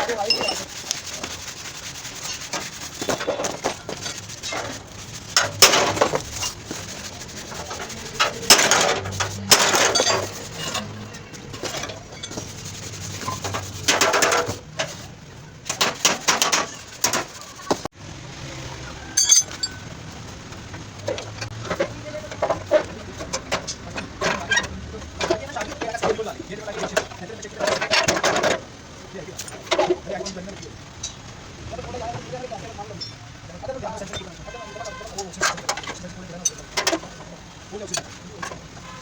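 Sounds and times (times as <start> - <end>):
tool scraping car panel: 0.0 - 11.0, 11.6 - 15.0
sharp metallic clinks: 19.1 - 19.8.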